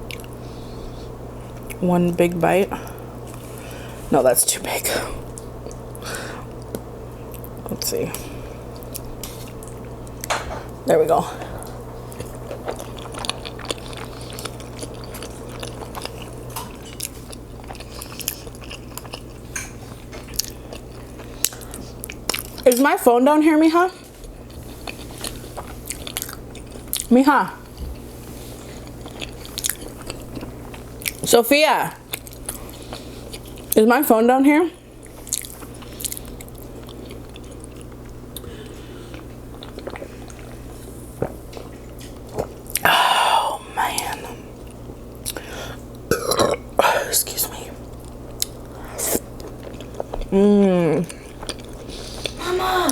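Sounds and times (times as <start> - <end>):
chewing and lip smacking: 0.0 - 0.4, 5.3 - 5.8, 11.4 - 22.8, 24.3 - 27.1, 27.7 - 31.3, 32.1 - 33.8, 35.0 - 42.9, 43.9 - 46.0, 47.3 - 50.3, 51.0 - 52.4
steady low hum: 0.0 - 52.9.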